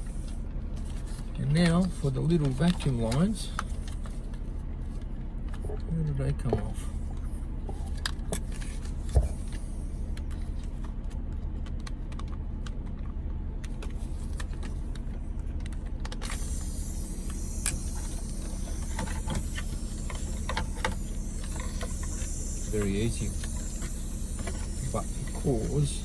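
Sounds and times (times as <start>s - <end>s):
car engine idling: 0.0s - 26.0s
hiss: 16.3s - 26.0s.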